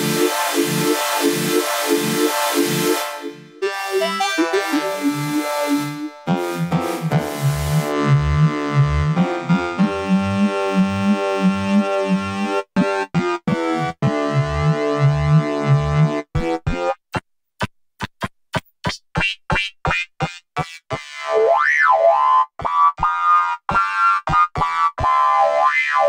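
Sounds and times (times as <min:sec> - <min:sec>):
short synth blips: 0:00.0 - 0:11.6
rising pitch sweep: 0:00.0 - 0:12.5
synth pattern with pulsing low notes: 0:00.0 - 0:17.0.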